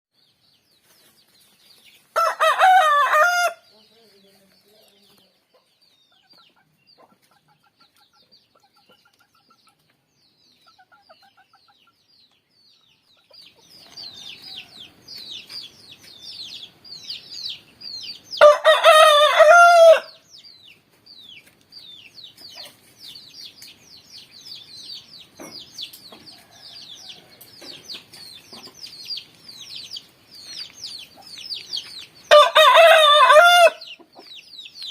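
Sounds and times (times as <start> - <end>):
rooster crowing: 2.2 - 3.6, 18.4 - 20.2, 32.3 - 33.9.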